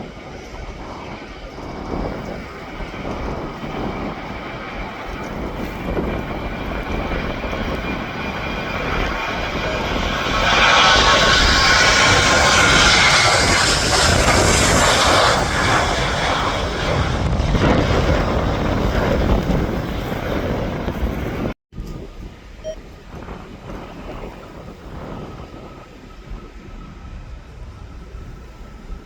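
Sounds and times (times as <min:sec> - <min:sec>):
aircraft engines whining: 0:00.0 - 0:29.0.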